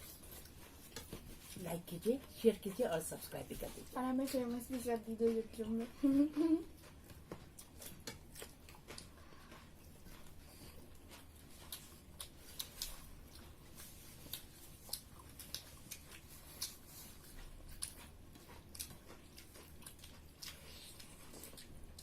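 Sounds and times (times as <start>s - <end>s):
people chewing food: 0.0s - 22.0s.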